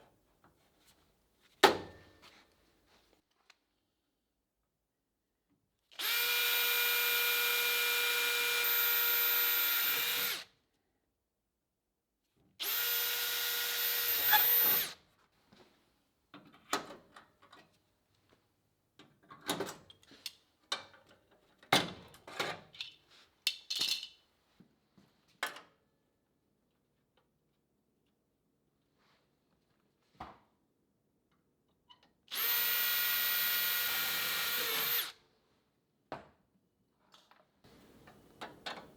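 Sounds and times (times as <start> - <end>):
electric power tool running: 32.4 - 35.1.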